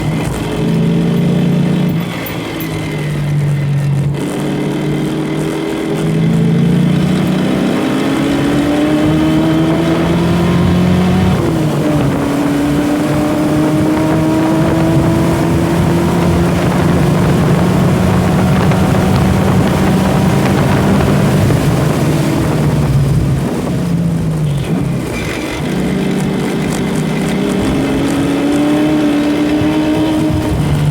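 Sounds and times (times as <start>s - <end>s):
car engine drone: 0.0s - 30.9s.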